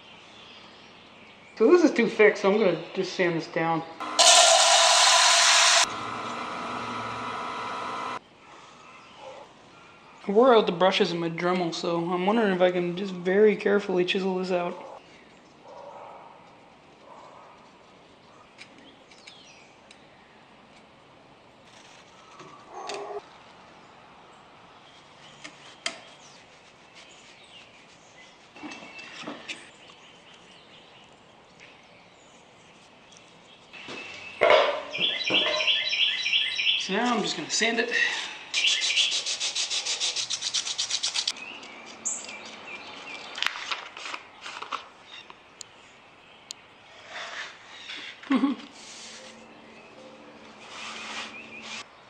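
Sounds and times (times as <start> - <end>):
sandpaper rubbing wood: 4.2 - 5.9, 25.6 - 28.6, 38.6 - 41.4, 48.8 - 49.4, 50.6 - 51.9.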